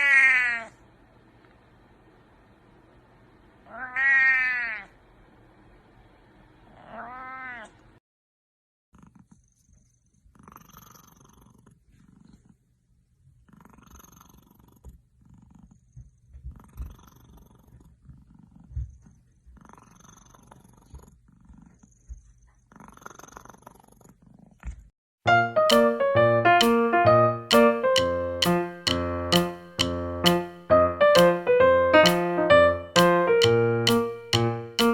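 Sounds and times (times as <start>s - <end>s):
cat meowing: 0.0s - 0.8s, 3.7s - 4.9s, 6.8s - 7.8s
cat purring: 8.9s - 24.9s
piano music: 25.2s - 34.9s.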